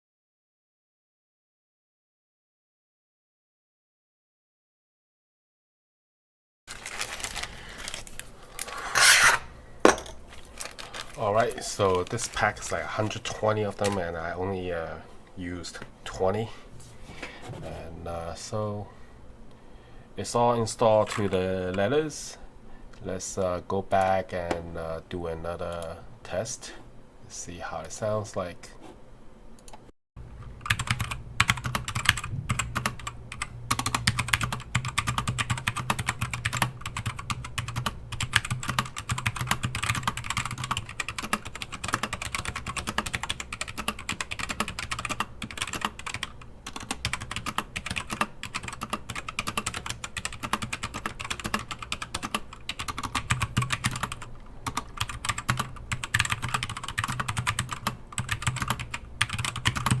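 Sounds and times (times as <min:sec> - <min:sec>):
mechanical keyboard typing: 0:30.6 - 1:00.0.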